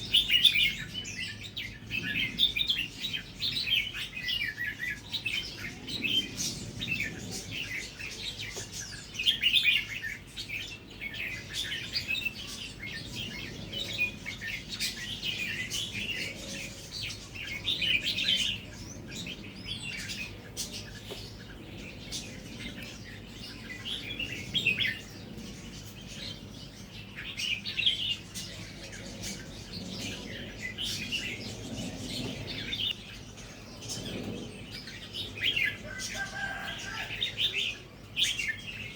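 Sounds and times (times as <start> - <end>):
bulbul singing: 0.0 - 38.9.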